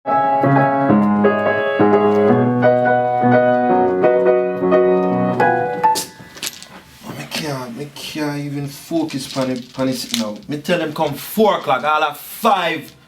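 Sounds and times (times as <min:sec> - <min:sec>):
piano chords and bass line: 0:00.1 - 0:06.6.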